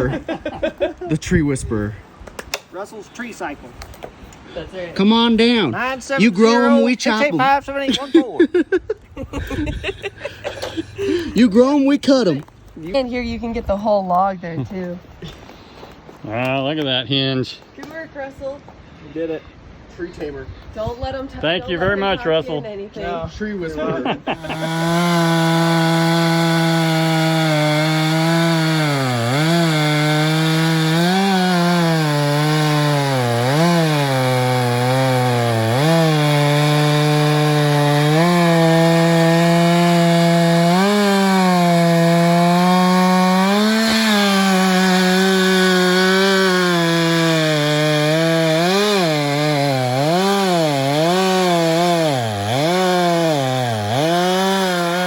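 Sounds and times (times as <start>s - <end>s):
chainsaw cutting log: 24.4s - 55.0s.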